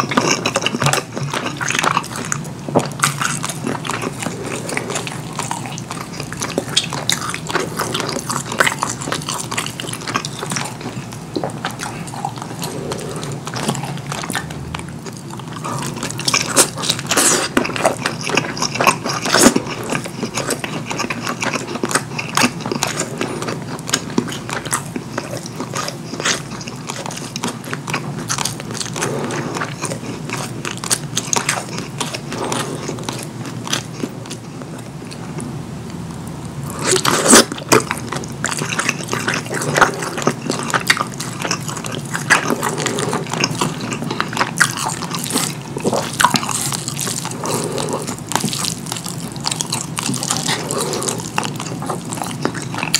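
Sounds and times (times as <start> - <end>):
person chewing food: 0.0 - 52.9.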